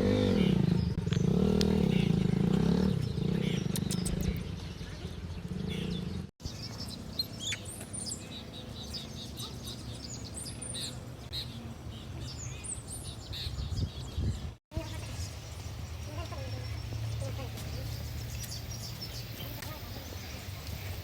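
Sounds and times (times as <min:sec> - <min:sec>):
motorcycle engine running: 0:00.0 - 0:11.3
small birds chirping: 0:00.0 - 0:21.0.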